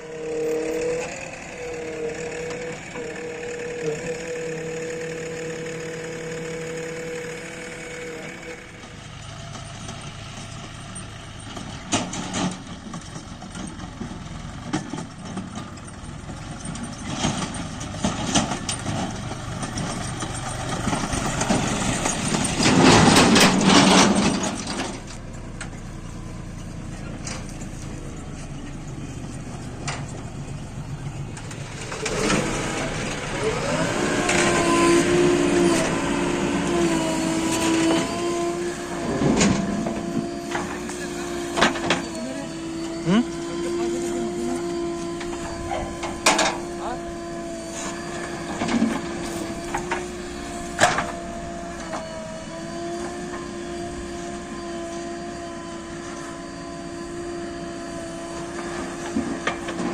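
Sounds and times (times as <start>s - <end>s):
steady whine: 0.0s - 12.6s, 17.4s - 59.9s
diesel engine under load: 0.0s - 59.9s
metal clanks and knocks: 9.5s - 25.8s, 45.1s - 46.8s.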